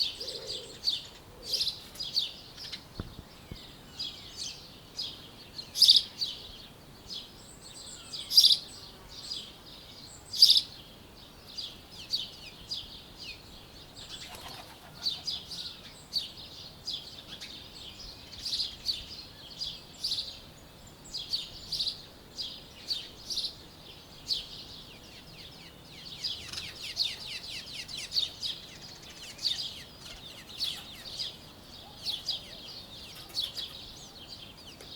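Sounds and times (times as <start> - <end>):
loud bird calls: 0.0 - 2.9, 14.0 - 16.2, 25.2 - 34.9
birds chirping and trilling: 0.0 - 34.9.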